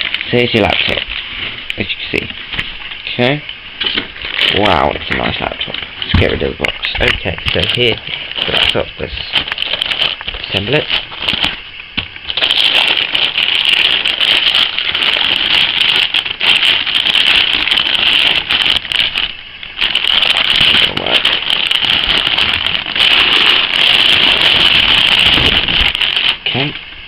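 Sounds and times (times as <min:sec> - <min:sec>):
plastic packaging crinkling: 0:00.0 - 0:27.0.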